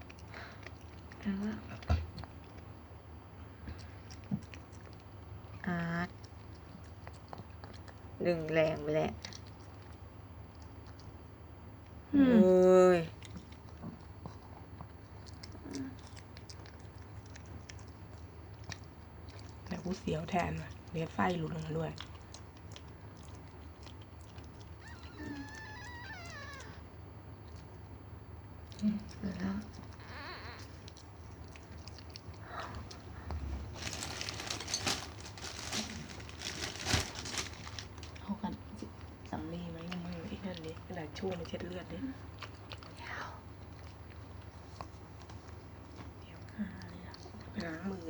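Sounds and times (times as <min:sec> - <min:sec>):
dog licking and chewing: 0:00.0 - 0:12.1, 0:12.8 - 0:48.0
faint low hum: 0:00.0 - 0:48.0
crinkly rustling: 0:21.9 - 0:26.8, 0:29.1 - 0:43.0.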